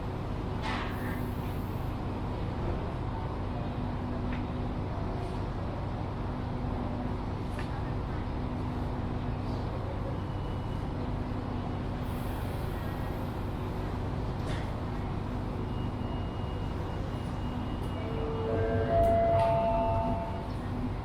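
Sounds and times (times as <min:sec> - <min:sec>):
railway station platform rumble: 0:00.0 - 0:21.0
public-address chime: 0:17.0 - 0:20.7.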